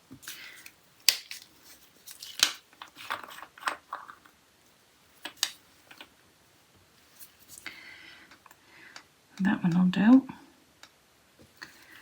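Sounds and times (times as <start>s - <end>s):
scratchy rustles: 7.0s - 7.7s.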